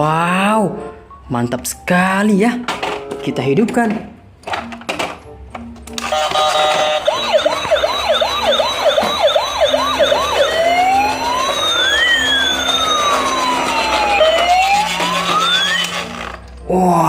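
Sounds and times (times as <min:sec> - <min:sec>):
toy fire truck siren: 0:06.0 - 0:16.4.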